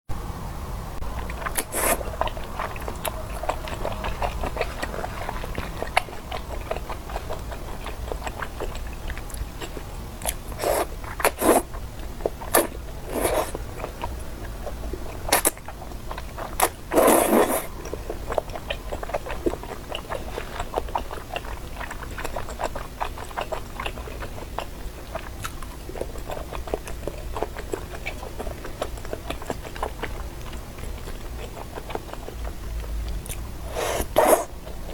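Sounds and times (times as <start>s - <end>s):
wet sticky chewing: 1.1s - 34.9s
loud bites or slurps: 1.5s - 2.0s, 10.3s - 11.7s, 16.6s - 17.7s, 33.7s - 34.5s.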